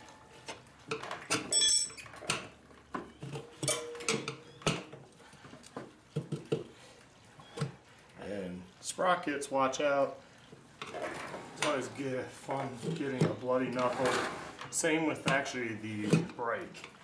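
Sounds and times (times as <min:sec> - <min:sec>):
tire irons clinking on wheel rim: 0:01.4 - 0:02.2.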